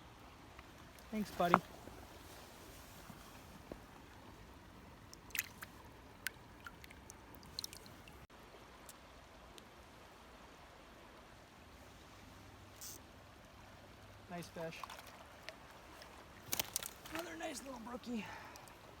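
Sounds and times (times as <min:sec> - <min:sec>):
creek running: 0:00.0 - 0:19.0.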